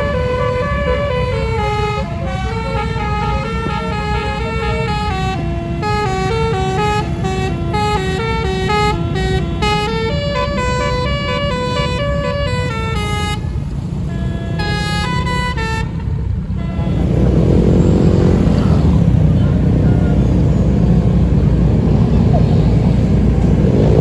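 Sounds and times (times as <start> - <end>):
multi-tone musical air horn: 0.0 - 17.3
low engine rumble: 0.0 - 24.0.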